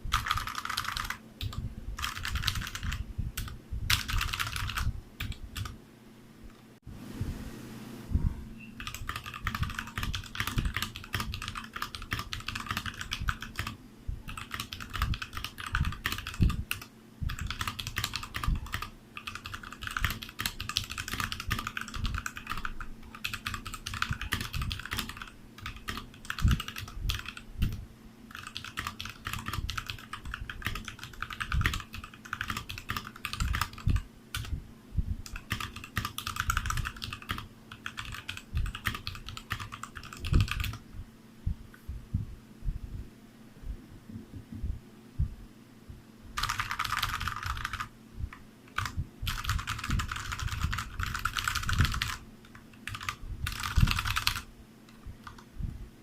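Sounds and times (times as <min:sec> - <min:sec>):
mechanical keyboard typing: 0:00.1 - 0:05.8, 0:08.8 - 0:34.5, 0:35.3 - 0:40.8, 0:46.4 - 0:47.9, 0:48.7 - 0:54.5, 0:55.2 - 0:55.5.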